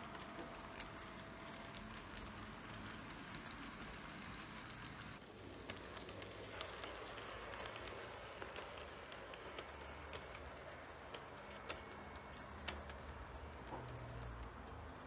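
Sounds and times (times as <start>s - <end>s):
model train rumble: 0.0s - 11.8s
wheels clicking on rails: 0.0s - 15.0s.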